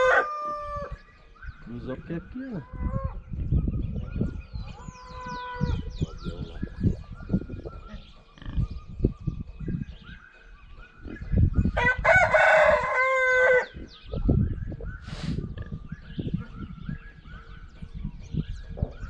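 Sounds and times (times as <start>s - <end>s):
rooster crowing: 0.0s - 1.0s, 11.8s - 13.7s
small birds chirping: 0.0s - 19.0s.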